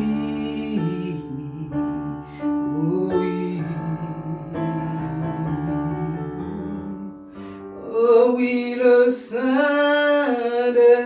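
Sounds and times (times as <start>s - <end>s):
slow worship keyboard chords: 0.0s - 8.6s.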